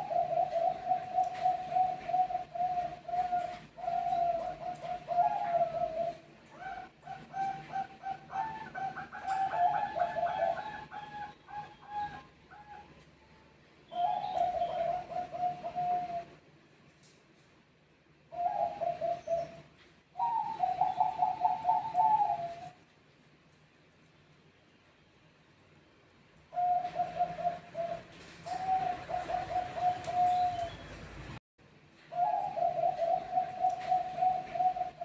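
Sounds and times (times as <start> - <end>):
doves cooing: 0.0 - 13.0, 13.9 - 16.4, 18.3 - 22.8, 26.5 - 31.3, 32.1 - 35.0.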